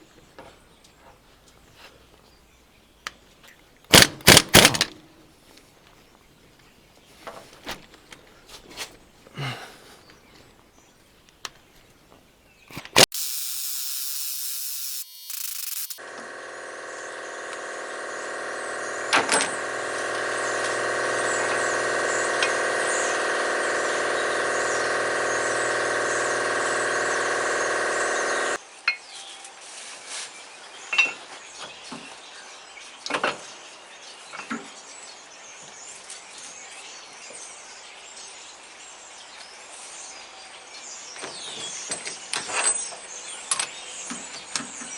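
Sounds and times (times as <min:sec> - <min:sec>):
air impact wrench running: 0:03.9 - 0:04.9, 0:12.9 - 0:28.6.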